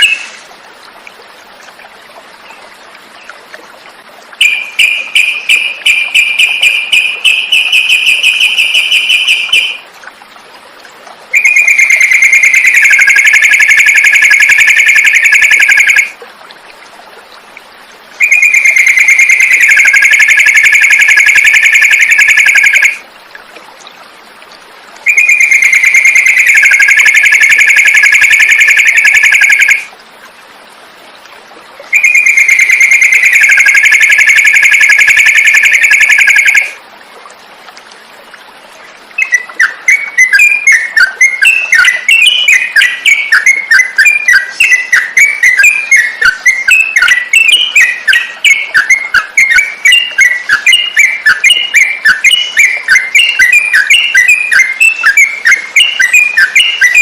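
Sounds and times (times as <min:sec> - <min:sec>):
bird trilling song: 0:04.4 - 0:09.8, 0:11.3 - 0:16.1, 0:18.2 - 0:23.0, 0:25.1 - 0:29.8, 0:31.9 - 0:36.7, 0:39.2 - 0:57.0.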